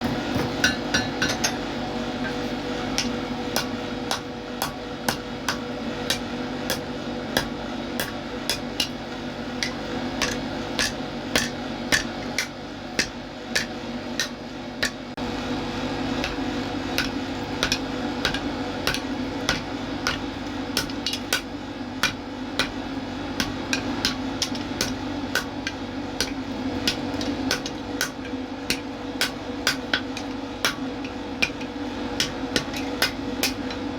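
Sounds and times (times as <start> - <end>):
steady hum: 0.0 - 33.9
hammer striking metal: 0.3 - 1.6.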